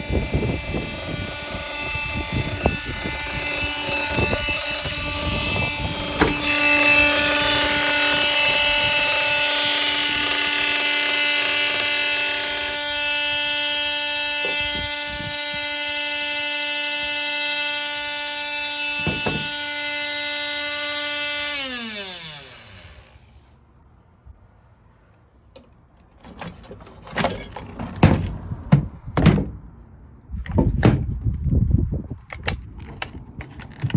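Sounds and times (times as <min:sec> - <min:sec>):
small electric motor whining: 0:00.0 - 0:23.5.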